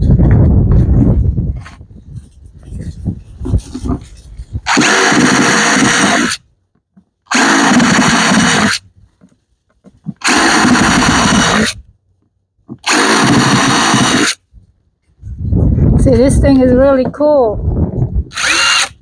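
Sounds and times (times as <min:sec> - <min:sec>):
electric drill running: 0:04.7 - 0:06.4, 0:07.3 - 0:08.8, 0:10.2 - 0:11.8, 0:12.9 - 0:14.4, 0:18.3 - 0:19.0.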